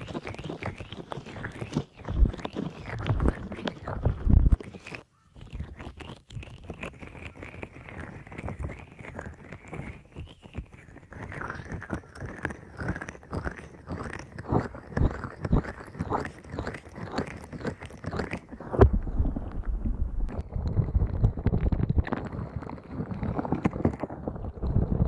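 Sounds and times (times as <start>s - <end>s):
muffled scratchy rubbing on microphone: 0.0s - 25.0s
muffled rumble: 18.6s - 22.1s.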